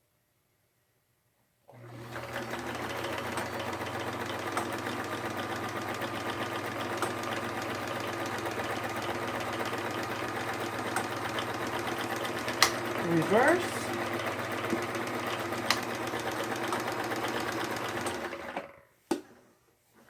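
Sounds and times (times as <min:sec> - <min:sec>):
sewing machine running: 0:01.7 - 0:18.8.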